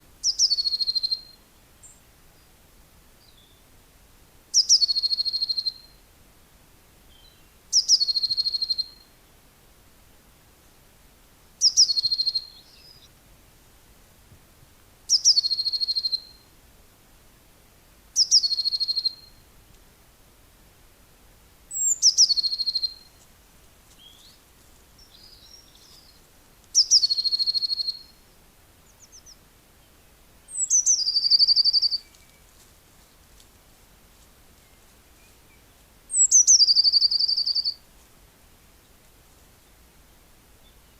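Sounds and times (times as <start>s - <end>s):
songbird singing with trill: 0.2s - 2.5s, 3.2s - 3.7s, 4.5s - 6.0s, 7.1s - 9.2s, 11.6s - 13.1s, 15.1s - 16.4s, 18.2s - 19.4s, 21.7s - 23.2s, 24.0s - 24.4s, 25.0s - 32.5s, 34.6s - 37.8s.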